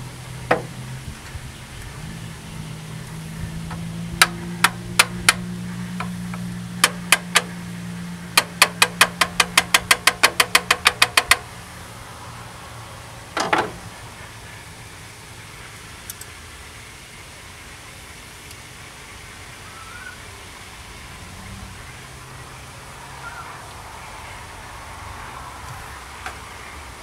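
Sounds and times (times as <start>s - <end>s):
low steady hum: 0.0s - 10.1s, 11.3s - 27.0s
metal on metal clicks: 3.7s - 7.6s, 8.4s - 11.5s.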